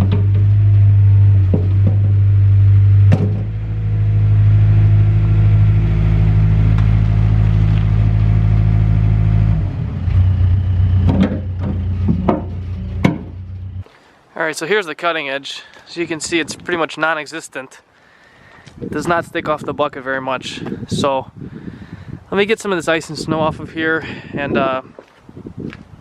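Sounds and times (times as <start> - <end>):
clunks: 0.0 - 13.9
diesel engine running: 0.0 - 13.9
sharp knock: 1.5 - 2.2, 3.0 - 3.5, 11.0 - 13.4.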